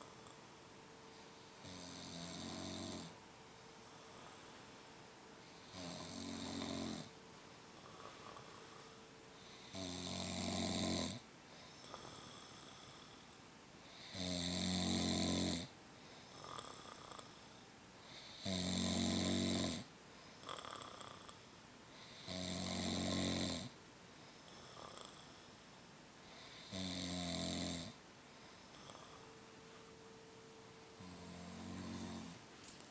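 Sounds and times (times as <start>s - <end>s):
soft breath sound: 0.0s - 2.0s, 3.1s - 6.1s, 7.0s - 9.8s, 11.2s - 14.2s, 15.8s - 18.5s, 20.0s - 22.3s, 24.1s - 26.8s, 28.2s - 32.9s
loud snoring: 1.6s - 3.2s, 5.6s - 7.1s, 7.8s - 11.2s, 11.8s - 13.2s, 13.9s - 15.7s, 16.3s - 17.4s, 18.1s - 21.4s, 22.0s - 23.8s, 24.5s - 25.5s, 26.4s - 28.0s, 31.0s - 32.4s.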